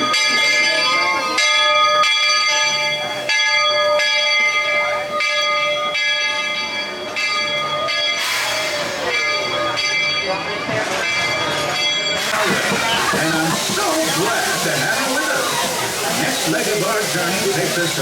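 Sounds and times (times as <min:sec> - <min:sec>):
locomotive bell ringing: 0:00.0 - 0:18.0
loud steam hiss: 0:08.1 - 0:09.8, 0:10.9 - 0:18.0.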